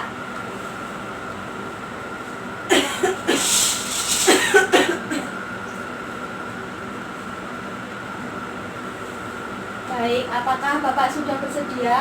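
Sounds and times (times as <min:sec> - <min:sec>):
curtain scraping along rail: 0:03.2 - 0:04.7.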